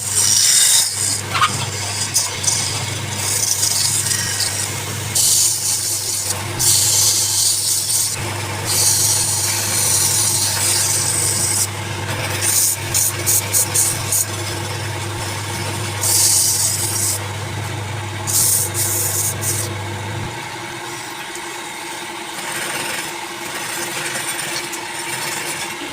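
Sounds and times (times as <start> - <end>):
tool scraping spinning wood: 0.0 - 25.9
wood lathe humming: 0.0 - 25.9.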